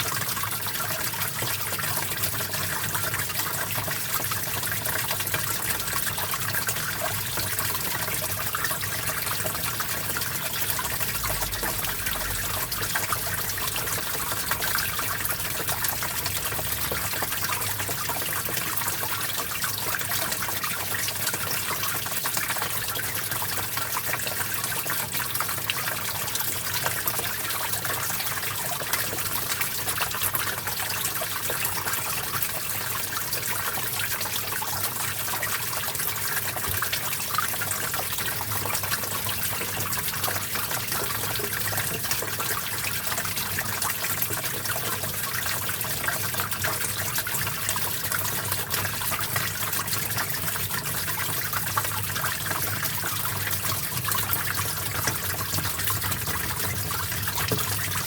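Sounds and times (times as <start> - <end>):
stream babbling over rocks: 1.6 - 21.4.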